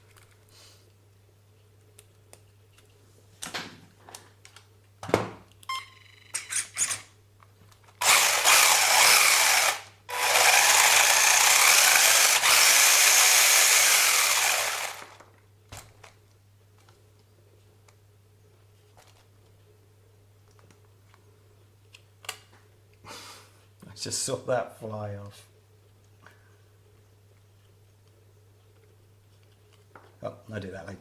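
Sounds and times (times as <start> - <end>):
small electric motor running: 8.0 - 15.2.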